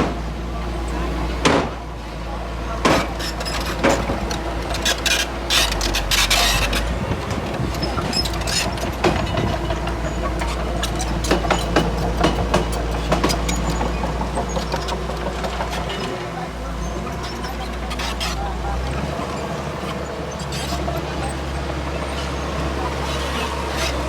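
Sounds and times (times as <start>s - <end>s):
bulldozer diesel engine running: 0.0s - 24.0s.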